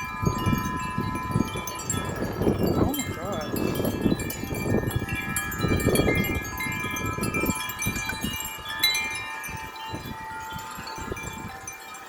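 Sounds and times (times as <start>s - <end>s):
wind rumbling on microphone: 0.0s - 11.8s
wind chimes ringing: 0.0s - 12.0s.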